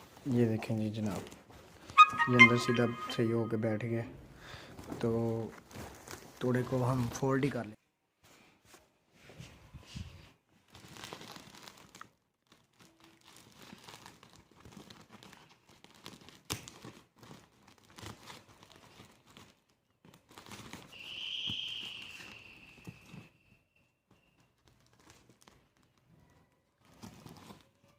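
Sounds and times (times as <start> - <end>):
high squeal: 2.0 - 4.1, 20.9 - 24.4.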